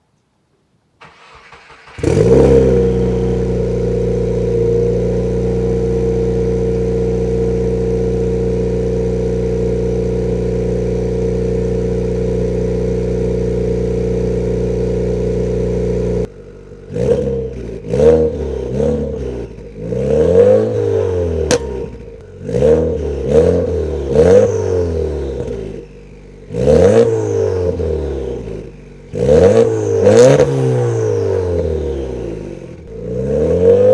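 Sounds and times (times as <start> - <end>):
car engine idling and revving: 1.0 - 33.9.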